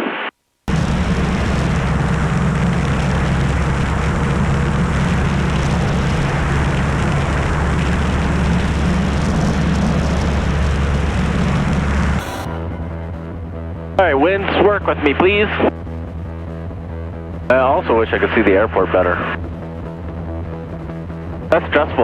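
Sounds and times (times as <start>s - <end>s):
light aircraft engine and propeller: 0.7s - 12.2s.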